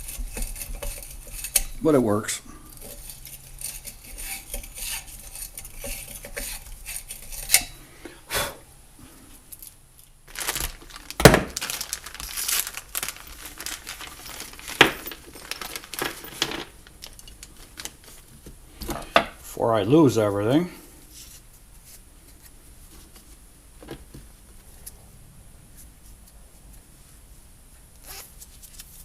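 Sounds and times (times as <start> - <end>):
brush scrubbing metal: 0.0 - 1.8, 2.8 - 7.6.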